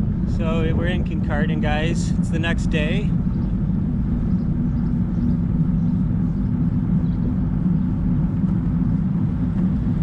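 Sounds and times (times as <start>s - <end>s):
wind buffeting microphone: 0.0s - 10.0s.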